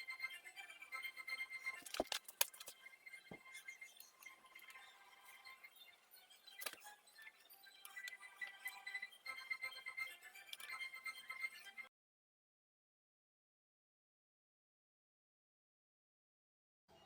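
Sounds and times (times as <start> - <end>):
faint music with chime-like tones: 0.0 - 11.9.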